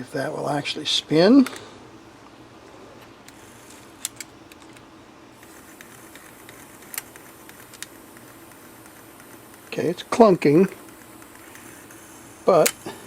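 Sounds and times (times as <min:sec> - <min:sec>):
faint steady hum: 0:00.0 - 0:13.0
tape recorder mechanism clunking: 0:03.0 - 0:09.8, 0:10.6 - 0:13.0.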